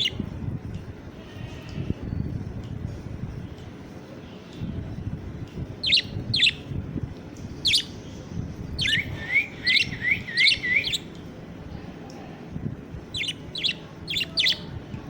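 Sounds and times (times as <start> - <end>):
budgerigar chirping: 5.8 - 6.6, 7.6 - 7.9, 8.8 - 11.1, 13.1 - 14.7.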